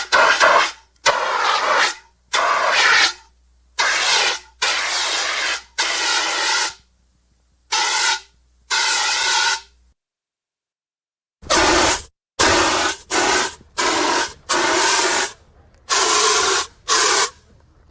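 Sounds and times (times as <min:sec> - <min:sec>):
fire extinguisher hissing blasts: 0:00.0 - 0:03.2, 0:03.8 - 0:06.8, 0:07.7 - 0:09.7, 0:11.4 - 0:17.4.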